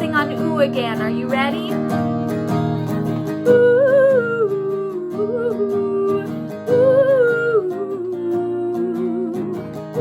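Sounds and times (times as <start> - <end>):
strummed acoustic guitar: 0.0 - 10.0
person singing wordless ooh: 3.4 - 10.0.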